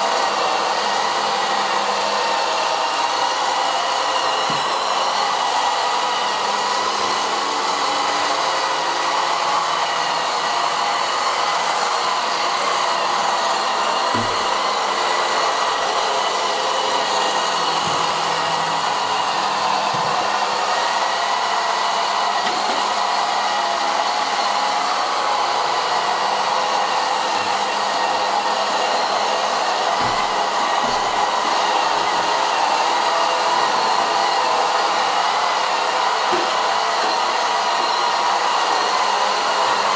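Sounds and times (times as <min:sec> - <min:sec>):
robotic vacuum cleaner whirring: 0:00.0 - 0:39.9
dull knocks: 0:30.0 - 0:31.6.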